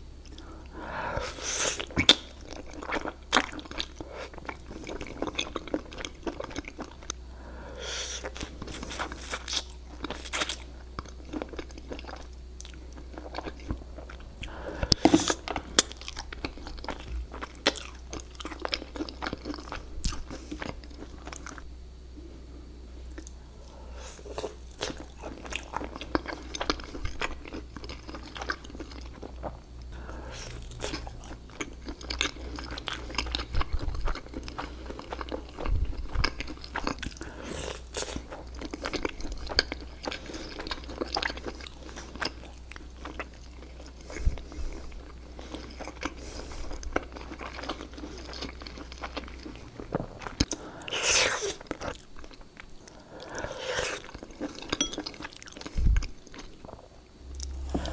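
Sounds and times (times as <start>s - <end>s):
crunchy chewing: 8.0s - 21.7s, 23.0s - 57.9s
low hum: 56.8s - 57.9s.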